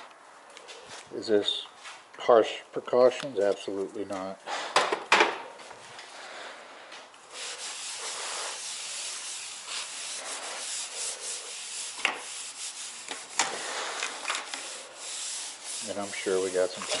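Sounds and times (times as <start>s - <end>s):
hand rubbing on work surface: 7.3s - 17.0s.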